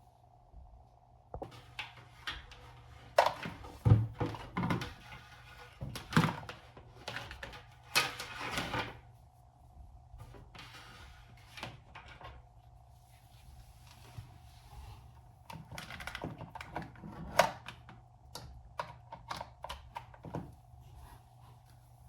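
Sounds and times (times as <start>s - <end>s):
faint steady hum: 0.0s - 22.0s
objects knocking and clattering: 3.2s - 5.2s.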